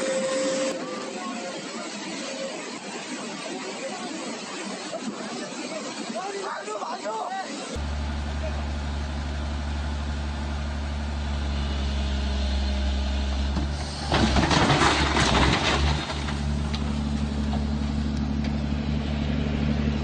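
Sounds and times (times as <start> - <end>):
heavy machine engine running: 7.8 - 20.0.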